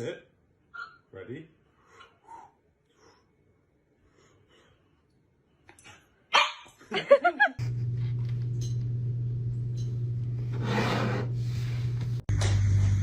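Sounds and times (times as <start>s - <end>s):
dog barking and yelping: 6.3s - 6.8s
steady low hum: 7.6s - 13.0s.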